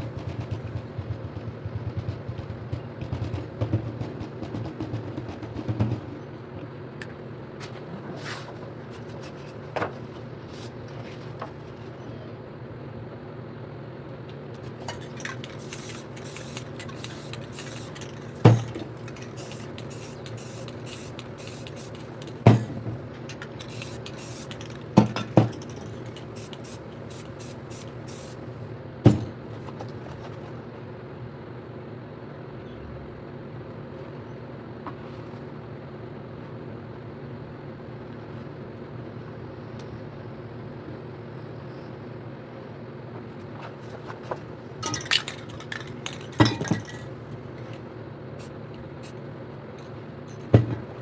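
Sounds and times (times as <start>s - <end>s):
steady low hum: 0.0s - 51.0s
spray paint can hissing: 14.9s - 22.6s, 23.3s - 28.4s, 48.4s - 49.2s.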